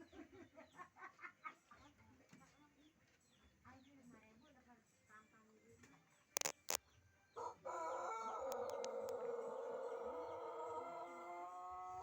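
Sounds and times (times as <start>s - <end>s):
sharp clicks: 6.4s - 6.8s
rooster crowing: 7.4s - 12.0s.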